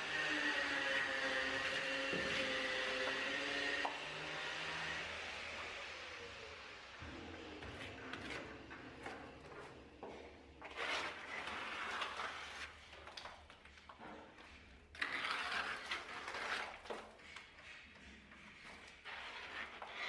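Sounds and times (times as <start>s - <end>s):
tool scraping plaster wall: 0.0s - 6.1s, 7.0s - 20.0s.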